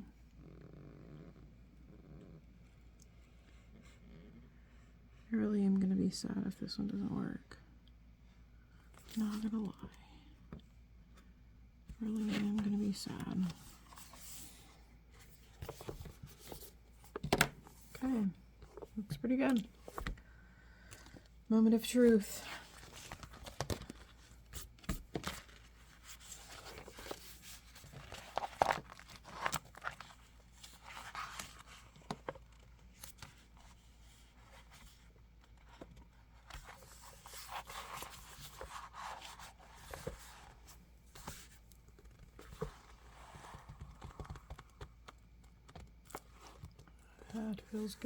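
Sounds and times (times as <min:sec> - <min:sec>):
plastic crinkling and scraping: 0:22.1 - 0:48.0.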